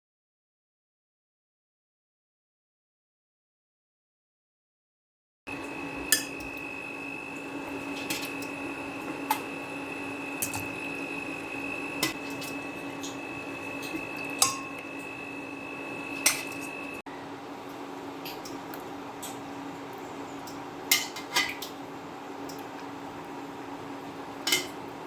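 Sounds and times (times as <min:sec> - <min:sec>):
high whine: 0:05.5 - 0:17.0
steady hum: 0:05.5 - 0:21.0
dishes and cutlery clinking: 0:13.8 - 0:14.8.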